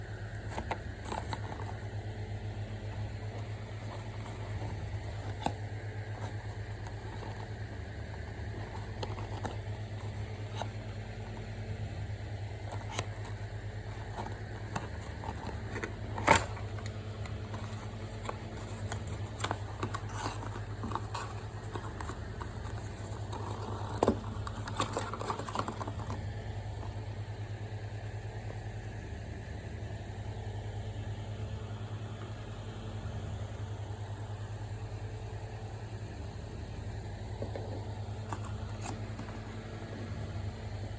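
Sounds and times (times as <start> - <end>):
packaging rustling and clicking: 0.4 - 2.0, 2.8 - 11.5, 12.6 - 26.4.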